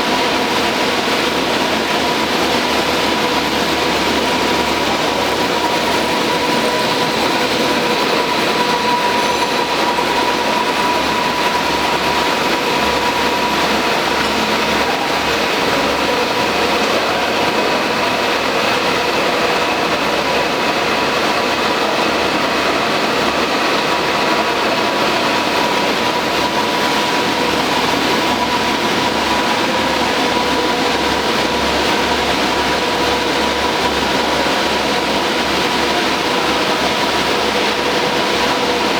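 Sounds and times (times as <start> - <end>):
machine whirring with whine: 0.0 - 38.9.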